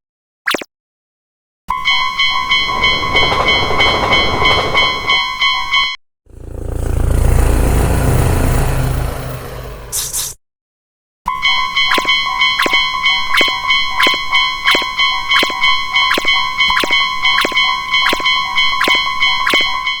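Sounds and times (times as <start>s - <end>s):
level crossing bell dinging: 1.8s - 6.0s, 11.3s - 20.0s
sustained metallic ringing tone: 1.8s - 9.0s, 11.3s - 20.0s.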